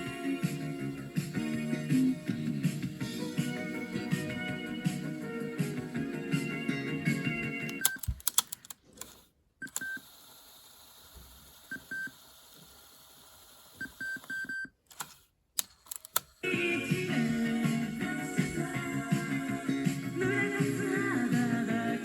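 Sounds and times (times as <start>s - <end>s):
music: 0.0s - 7.8s, 16.4s - 22.0s.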